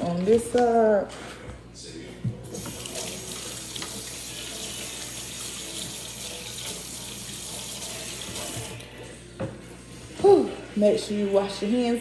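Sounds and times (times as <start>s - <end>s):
faucet running water: 2.4s - 9.0s
hands washing under water: 2.5s - 8.8s.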